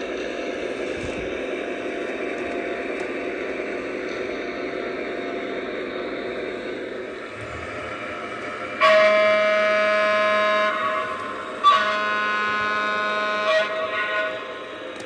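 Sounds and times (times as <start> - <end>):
running model train hum: 0.0 - 15.0
model train horn blasts: 8.8 - 14.6.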